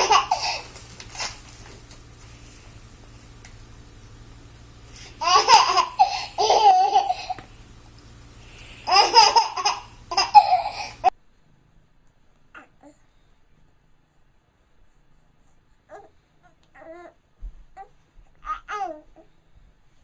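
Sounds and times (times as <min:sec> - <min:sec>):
young child laughing: 0:00.0 - 0:01.4, 0:05.2 - 0:07.5, 0:08.8 - 0:11.1.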